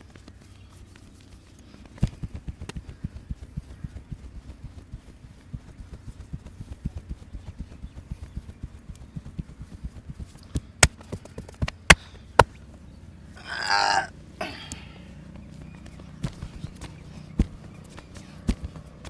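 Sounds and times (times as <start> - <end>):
hands pounding on body: 16.2 - 19.0.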